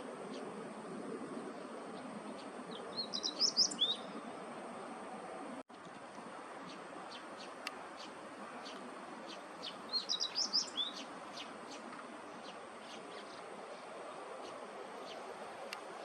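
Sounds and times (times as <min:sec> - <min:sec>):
faint high ticking calls: 0:00.1 - 0:05.0, 0:05.7 - 0:16.0
small songbird singing: 0:02.0 - 0:04.2, 0:06.6 - 0:16.0.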